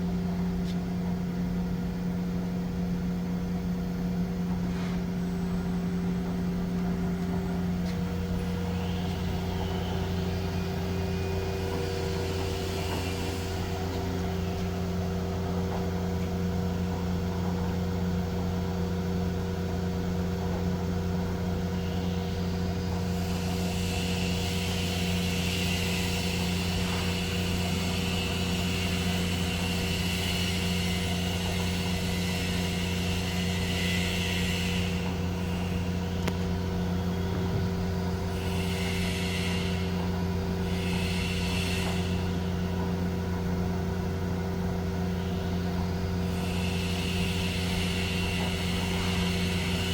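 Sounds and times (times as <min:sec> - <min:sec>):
machine hum: 0:00.0 - 0:49.9.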